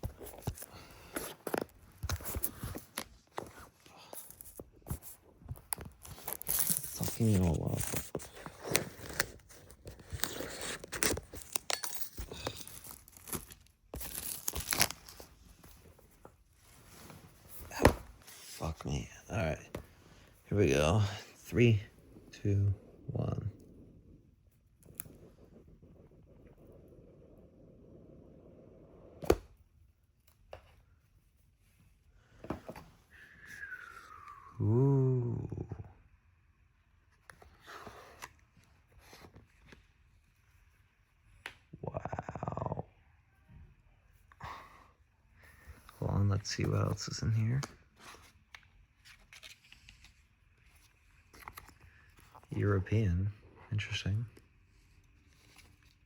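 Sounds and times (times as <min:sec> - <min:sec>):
plastic shrink-wrap tearing: 0:10.0 - 0:15.3.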